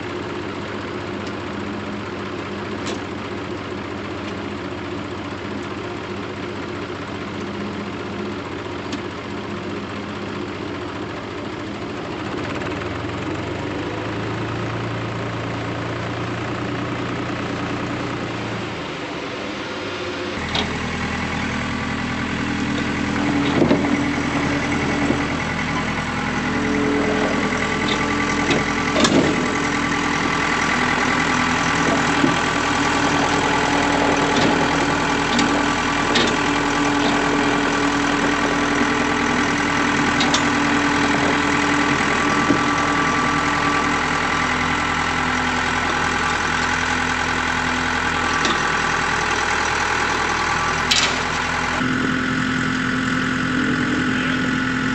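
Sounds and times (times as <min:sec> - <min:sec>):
farm vehicle engine running: 0:00.0 - 0:54.9
clunks and rattles: 0:20.4 - 0:51.8.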